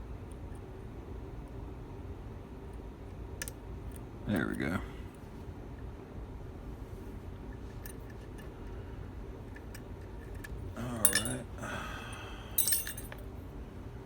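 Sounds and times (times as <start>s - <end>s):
padlock parts clinking: 9.5s - 11.5s, 12.6s - 13.2s.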